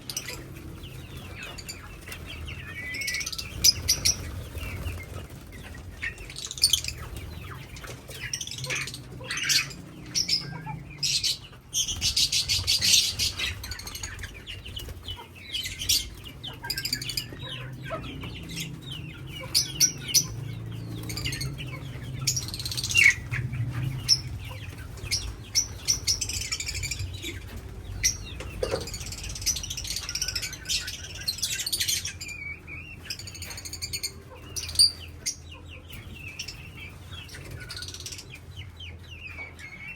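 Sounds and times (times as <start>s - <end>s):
parrots chirping and squawking: 0.0s - 39.9s
wings flapping: 0.1s - 9.9s.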